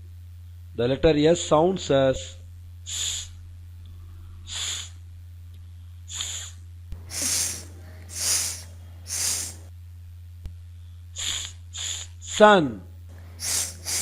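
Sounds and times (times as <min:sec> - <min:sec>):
person hissing sss sound: 0:02.9 - 0:03.4, 0:04.4 - 0:05.0, 0:06.1 - 0:09.7, 0:11.2 - 0:12.4, 0:13.3 - 0:14.0.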